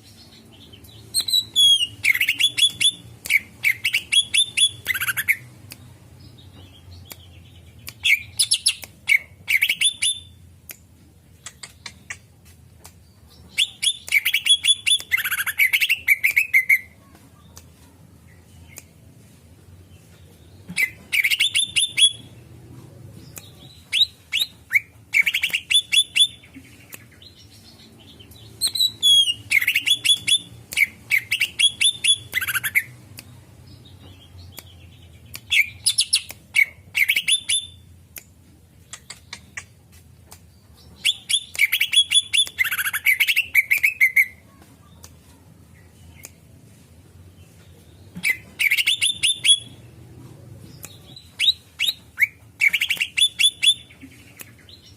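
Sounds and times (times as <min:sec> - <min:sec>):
bird rapid sharp chirps: 0:00.8 - 0:05.4, 0:28.4 - 0:33.0, 0:48.1 - 0:50.0.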